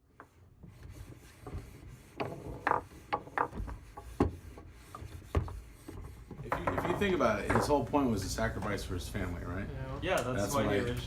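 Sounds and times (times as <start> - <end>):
foosball ball and rods clacking: 2.0 - 7.9.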